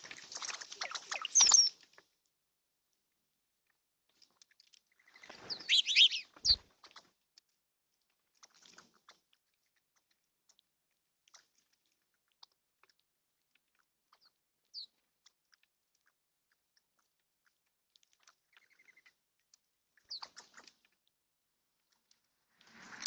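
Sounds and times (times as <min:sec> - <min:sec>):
bird chirps: 0:00.4 - 0:01.8, 0:04.9 - 0:07.0, 0:18.5 - 0:19.2, 0:20.0 - 0:20.7.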